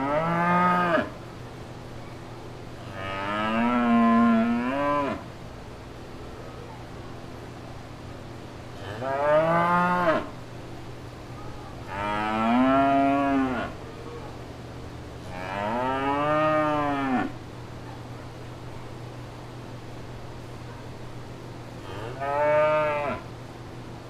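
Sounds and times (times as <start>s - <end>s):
cows mooing: 2.9s - 5.2s, 8.9s - 10.3s, 11.9s - 13.8s, 15.2s - 17.4s, 21.8s - 23.2s.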